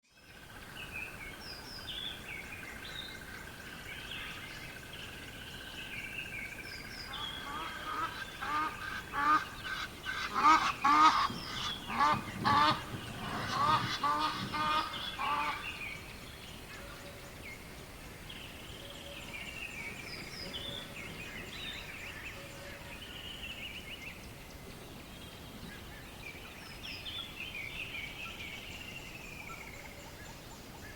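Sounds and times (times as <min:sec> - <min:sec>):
birds calling harshly: 0:06.8 - 0:17.2.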